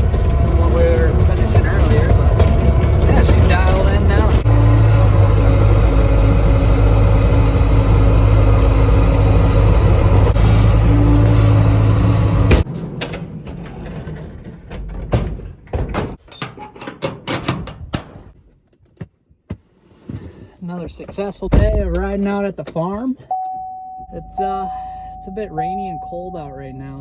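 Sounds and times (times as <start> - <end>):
skid steer engine running: 0.0 - 12.7.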